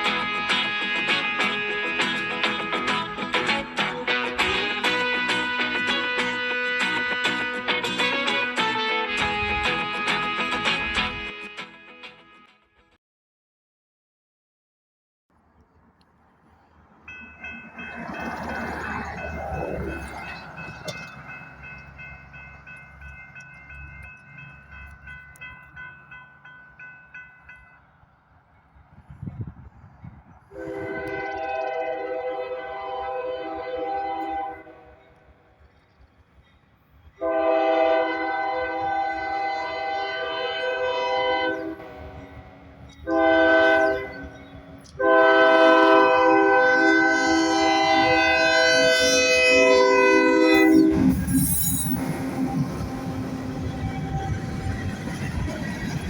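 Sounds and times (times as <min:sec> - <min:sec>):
train rumble: 0:00.0 - 0:12.3, 0:15.4 - 0:56.0
locomotive air horn blasts: 0:00.0 - 0:13.0, 0:30.5 - 0:35.1, 0:37.2 - 0:52.1
railroad crossing bell ringing: 0:17.0 - 0:28.8, 0:37.2 - 0:56.0.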